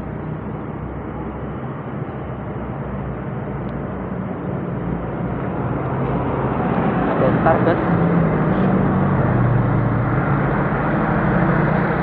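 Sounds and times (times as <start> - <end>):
bus driving past: 0.0 - 12.0.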